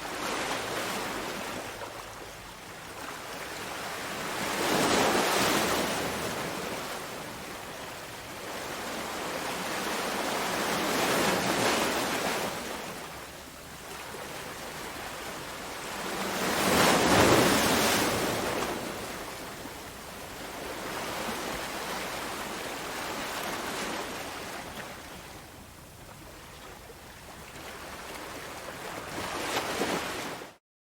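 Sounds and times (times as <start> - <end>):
ocean waves breaking: 13.8 - 25.4, 26.3 - 30.5.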